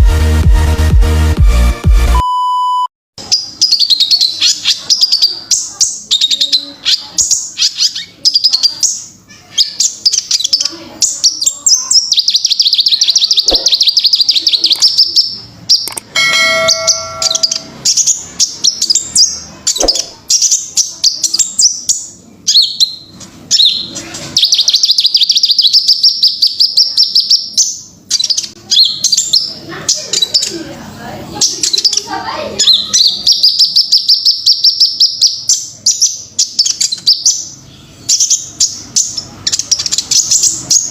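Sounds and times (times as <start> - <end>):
bird twittering and trilling: 3.2 - 40.9
steady ringing tone: 16.1 - 17.9.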